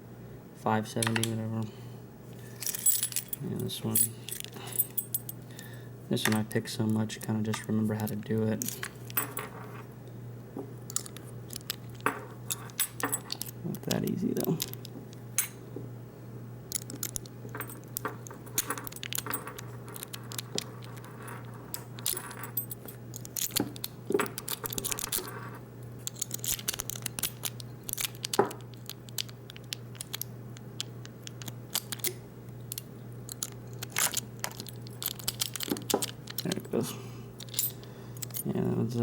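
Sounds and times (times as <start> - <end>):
low steady hum: 0.0 - 39.0
lock pick metallic clicks and scrapes: 10.9 - 13.6, 16.7 - 25.4, 26.0 - 36.6.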